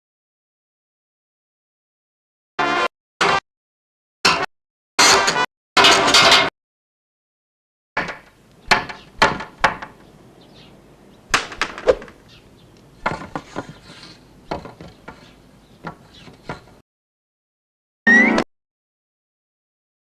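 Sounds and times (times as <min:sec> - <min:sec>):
hammering and knocking on wooden door: 0:08.0 - 0:10.0, 0:14.5 - 0:16.8.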